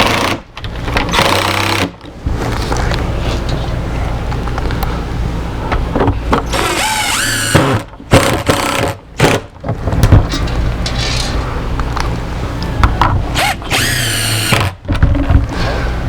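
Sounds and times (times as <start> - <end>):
power drill driving screws: 6.5 - 7.9, 13.4 - 14.8
drill clicks: 6.5 - 8.9, 13.4 - 14.8.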